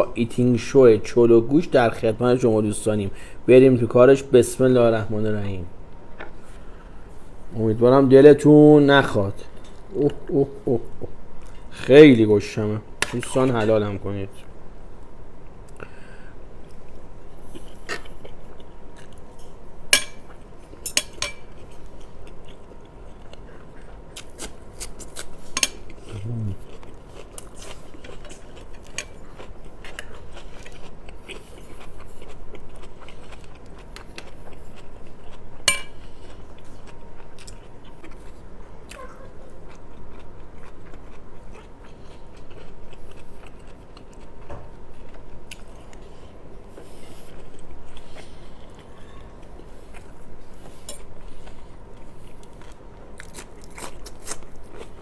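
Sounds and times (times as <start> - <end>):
chewing: 16.6 - 19.4, 20.0 - 55.0
cutlery scraping on a plate: 19.4 - 21.9, 35.7 - 36.0.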